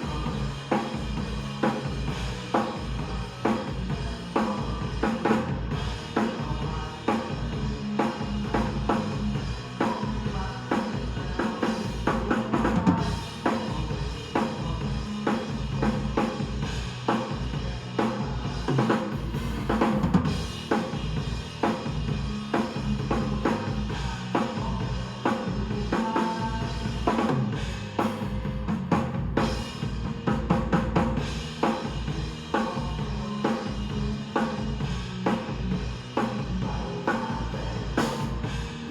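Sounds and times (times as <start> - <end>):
drum kit playing a groove: 0.0 - 38.9.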